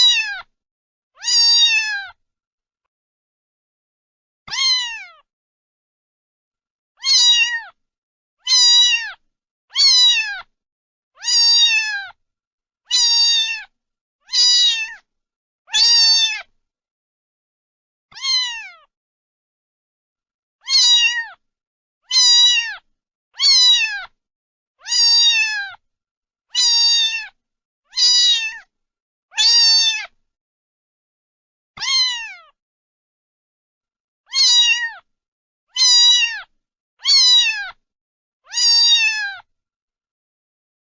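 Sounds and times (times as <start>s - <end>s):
cat meowing: 0.0s - 0.5s, 1.2s - 2.2s, 4.5s - 5.3s, 7.0s - 7.8s, 8.4s - 10.5s, 11.2s - 12.2s, 12.9s - 13.7s, 14.3s - 15.0s, 15.7s - 16.5s, 18.1s - 18.9s, 20.6s - 21.4s, 22.1s - 24.2s, 24.8s - 25.8s, 26.5s - 28.7s, 29.3s - 30.2s, 31.8s - 32.6s, 34.3s - 35.1s, 35.7s - 37.8s, 38.5s - 39.5s.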